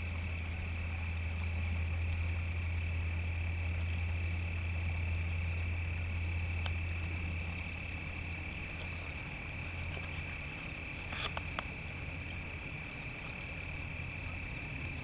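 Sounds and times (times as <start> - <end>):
high-pitched whine: 0.0 - 15.0
low hum: 0.0 - 15.0
faint click: 6.6 - 6.8.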